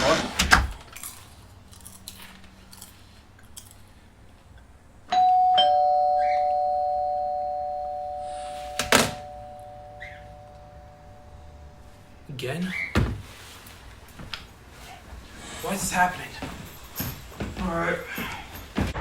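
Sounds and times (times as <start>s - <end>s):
doorbell ding-dong chime: 5.1s - 11.8s.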